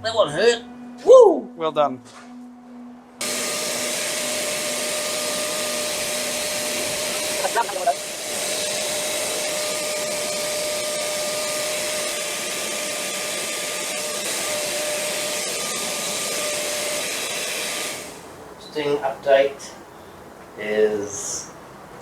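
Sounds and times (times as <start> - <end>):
faint steady whine: 0.0 - 3.3
vacuum motor whirring: 3.2 - 18.2.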